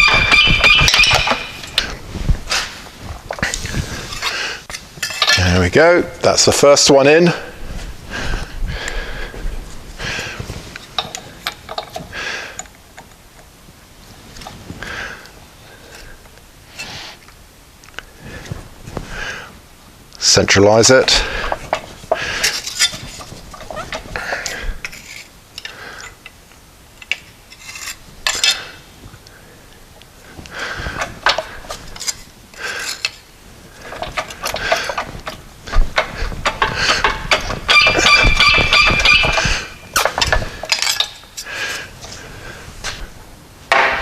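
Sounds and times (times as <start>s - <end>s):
metal tools clinking: 0.0s - 2.0s, 4.1s - 5.7s, 36.0s - 41.7s
metal-on-metal scrapes: 0.0s - 2.7s
person breathing: 3.4s - 4.7s, 7.4s - 10.6s, 12.1s - 12.7s, 14.8s - 17.2s, 18.0s - 19.6s, 21.2s - 22.7s, 24.1s - 24.9s, 25.6s - 26.2s, 28.4s - 31.8s, 32.5s - 33.1s, 35.7s - 37.5s, 39.4s - 43.2s.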